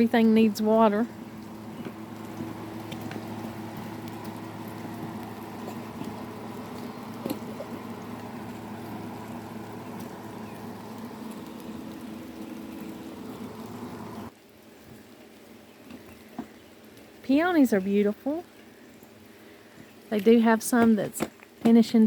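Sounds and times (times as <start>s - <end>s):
low steady hum: 0.0s - 14.6s
water dripping: 0.0s - 21.6s
rain falling: 0.0s - 22.0s.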